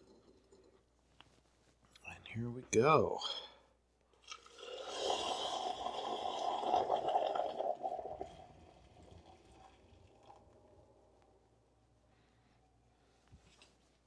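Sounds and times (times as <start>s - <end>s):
liquid pouring into container: 4.2s - 10.8s.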